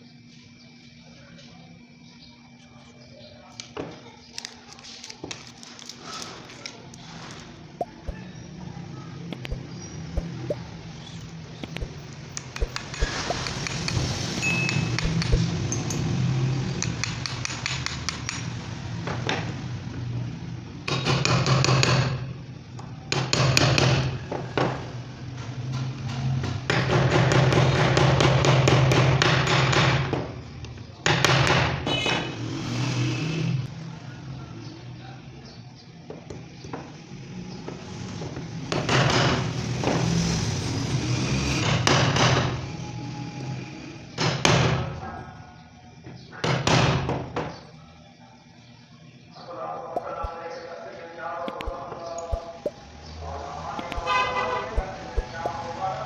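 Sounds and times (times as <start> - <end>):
scraping and rustling handling noise: 3.6 - 7.7
steady low hum: 5.9 - 16.8
hammer knocks and taps: 11.6 - 14.0, 14.7 - 15.5, 53.8 - 54.1.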